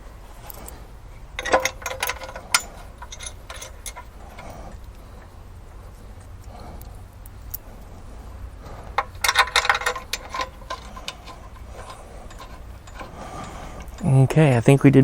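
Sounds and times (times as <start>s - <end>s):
wrench clinking on steel bolts: 1.4s - 5.3s, 8.9s - 14.3s.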